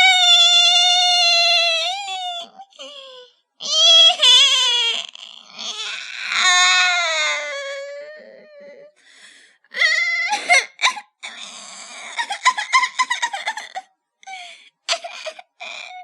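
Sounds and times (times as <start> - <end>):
baby laughing and squealing: 12.0 - 13.8.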